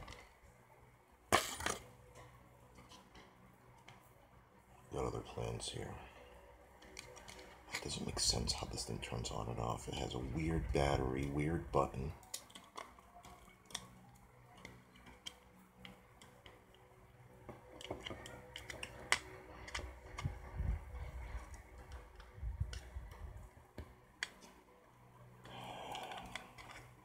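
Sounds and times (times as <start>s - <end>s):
plastic gadget clicking and tapping: 12.2s - 16.8s, 17.5s - 24.6s, 25.4s - 26.9s.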